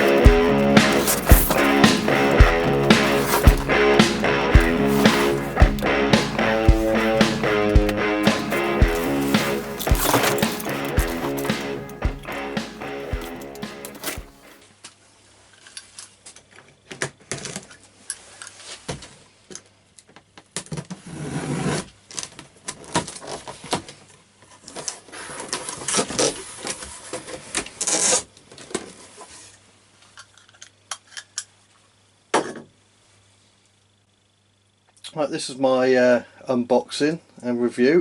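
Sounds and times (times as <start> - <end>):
handling clicks and knocks: 0.0 - 14.6
rustling and scraping: 0.0 - 14.6.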